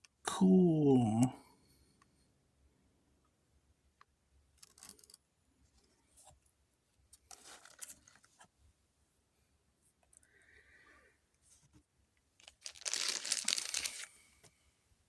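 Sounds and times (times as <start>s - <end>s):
trading cards rustling: 7.3s - 8.3s, 12.4s - 14.3s.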